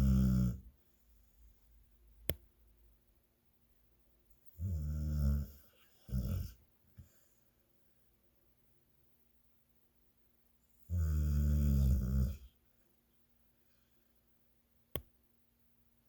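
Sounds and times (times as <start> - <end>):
person snoring: 0.0 - 0.7, 4.6 - 6.6, 10.9 - 12.5.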